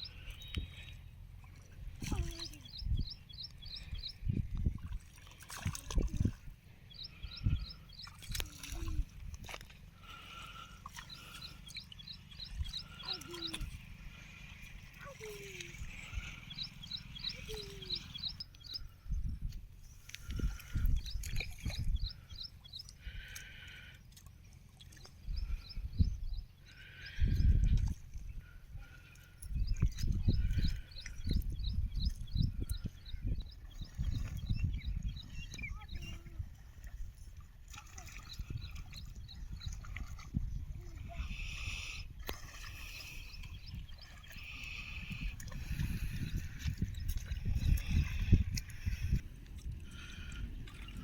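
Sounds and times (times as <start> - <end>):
small birds chirping: 0.0 - 1.2, 2.0 - 4.6, 5.5 - 9.1, 10.0 - 19.3, 19.9 - 36.4, 38.0 - 49.2
floodwater sloshing and splashing: 0.0 - 51.0
bird chirping: 16.0 - 18.9.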